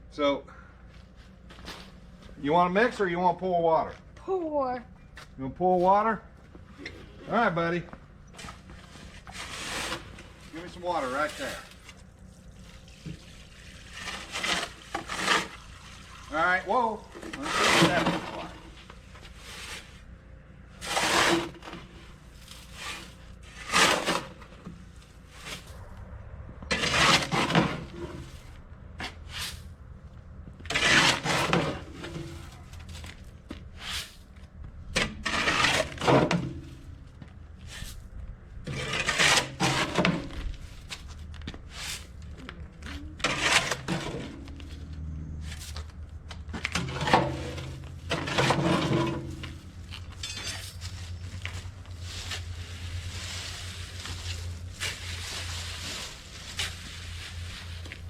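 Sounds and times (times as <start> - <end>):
shovel scraping wet mortar: 8.4 - 12.1, 13.0 - 20.1, 20.7 - 25.8, 26.7 - 29.7, 30.7 - 34.4, 35.0 - 37.0, 38.6 - 41.1, 41.7 - 42.3, 43.0 - 44.8, 45.4 - 58.0.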